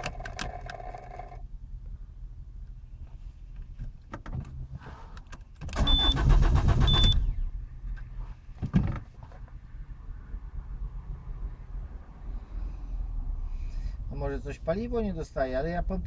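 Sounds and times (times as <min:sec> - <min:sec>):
starter motor cranking engine: 0:00.0 - 0:01.4, 0:05.6 - 0:07.5
short electronic beeps: 0:06.8 - 0:07.2.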